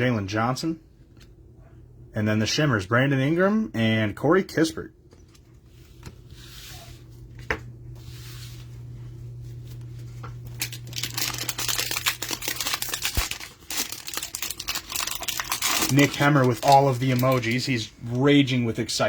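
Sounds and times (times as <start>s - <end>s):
packaging tearing and crinkling: 10.5s - 17.8s.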